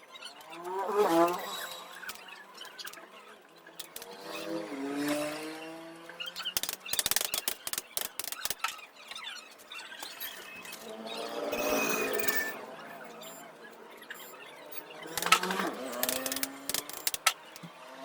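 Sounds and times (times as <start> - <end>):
rapid sharp clicks and taps: 6.6 - 8.7, 15.1 - 17.7.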